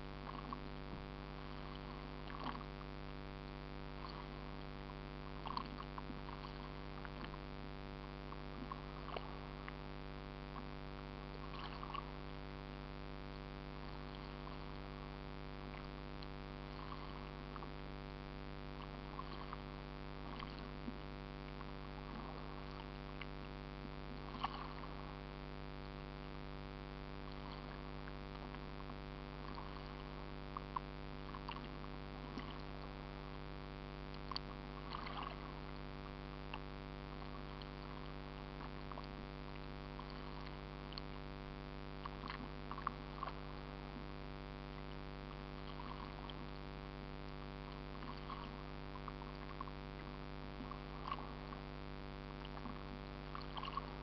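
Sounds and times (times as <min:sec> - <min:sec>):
steady mechanical hum: 0:00.0 - 0:54.0
faint splashes: 0:00.1 - 0:07.6, 0:08.2 - 0:12.4, 0:13.6 - 0:44.1, 0:44.7 - 0:54.0
faint ticks: 0:00.2 - 0:07.5, 0:15.7 - 0:18.2, 0:18.8 - 0:25.0, 0:34.0 - 0:41.2, 0:42.0 - 0:44.0.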